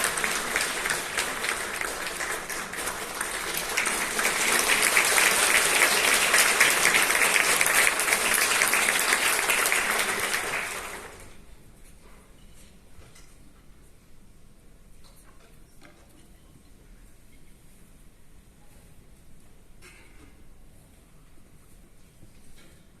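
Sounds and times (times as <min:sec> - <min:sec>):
audience applauding: 0:00.0 - 0:11.4.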